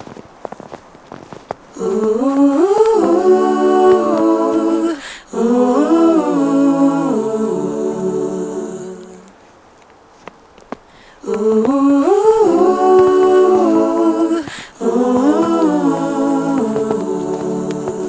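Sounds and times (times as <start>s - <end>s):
soft footsteps: 0.0s - 4.9s, 9.3s - 18.0s
person humming: 1.8s - 9.3s, 11.2s - 18.0s.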